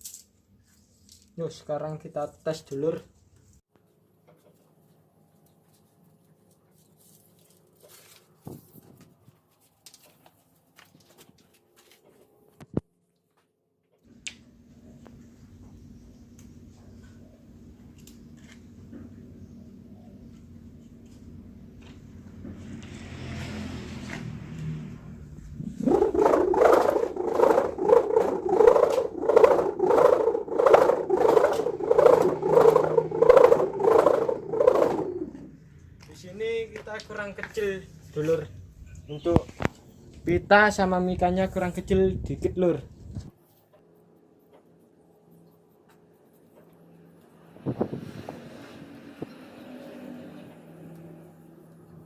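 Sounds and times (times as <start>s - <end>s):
kite hummer buzzing hum: 24.3s - 35.8s, 42.9s - 52.0s.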